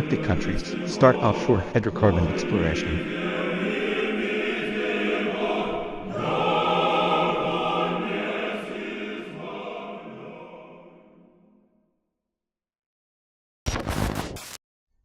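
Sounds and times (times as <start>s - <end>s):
choir singing: 0.0s - 11.8s.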